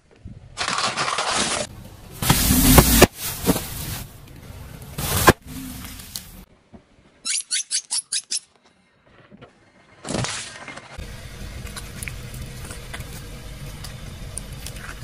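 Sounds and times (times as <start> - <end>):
objects crunching under car tyre: 0.6 - 4.1, 5.0 - 6.4
short high falling squeaks: 7.2 - 8.6.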